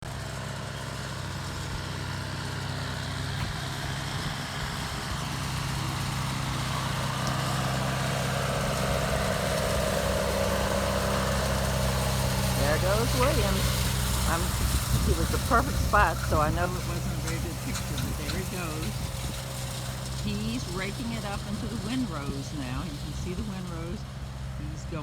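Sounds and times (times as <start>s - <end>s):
tractor engine droning: 0.0s - 25.0s.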